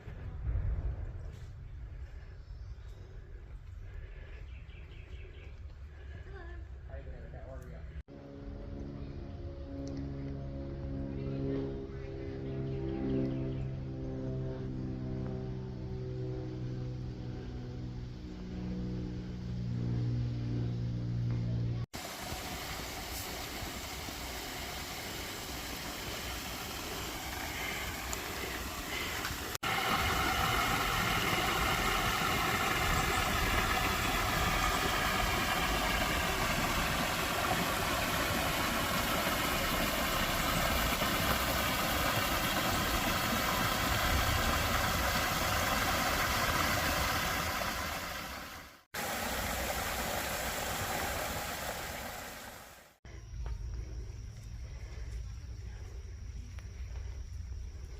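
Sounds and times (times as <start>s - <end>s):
rushing water: 22.0s - 53.0s.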